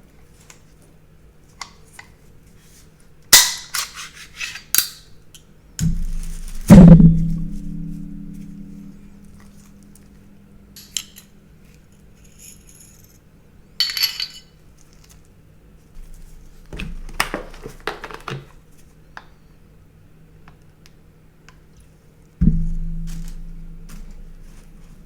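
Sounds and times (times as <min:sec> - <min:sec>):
pistol parts clicking and clinking: 0:13.8 - 0:14.5.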